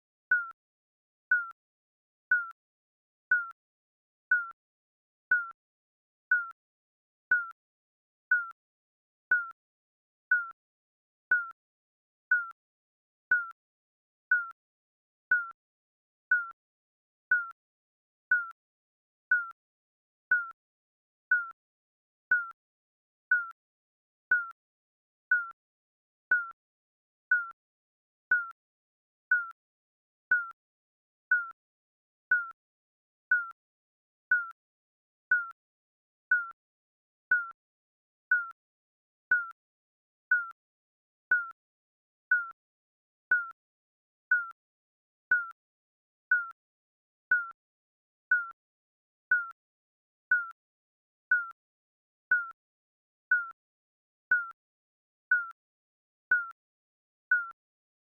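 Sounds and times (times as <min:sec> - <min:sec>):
timer beeping: 0:00.3 - 0:00.6, 0:02.3 - 0:02.6, 0:03.3 - 0:03.6, 0:05.3 - 0:05.6, 0:07.3 - 0:07.5, 0:08.3 - 0:08.6, 0:10.3 - 0:10.5, 0:12.3 - 0:12.5, 0:13.3 - 0:13.5, 0:15.3 - 0:15.6, 0:17.3 - 0:17.5, 0:18.3 - 0:18.5, 0:19.3 - 0:19.5, 0:20.3 - 0:20.5, 0:22.3 - 0:22.5, 0:24.3 - 0:24.5, 0:25.3 - 0:25.5, 0:27.3 - 0:27.5, 0:28.3 - 0:28.5, 0:29.3 - 0:29.5, 0:30.3 - 0:30.5, 0:32.3 - 0:32.5, 0:39.3 - 0:39.5, 0:40.3 - 0:40.5, 0:42.3 - 0:42.6, 0:44.3 - 0:44.5, 0:47.3 - 0:47.6, 0:51.3 - 0:51.5.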